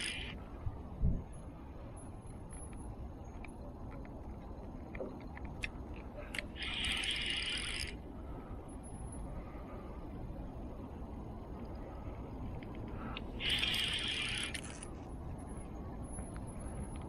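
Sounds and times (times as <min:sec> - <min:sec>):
scattered clicks: 0:00.0 - 0:00.4, 0:02.5 - 0:08.0, 0:12.5 - 0:15.0
spinning reel whirring: 0:00.0 - 0:00.4, 0:06.6 - 0:08.0, 0:13.4 - 0:14.9.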